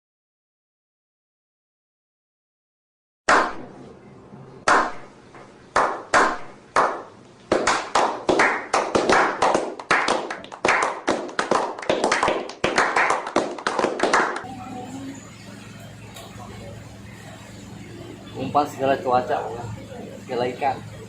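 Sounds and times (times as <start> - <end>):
sharp slaps: 3.3 - 3.7, 4.7 - 14.4.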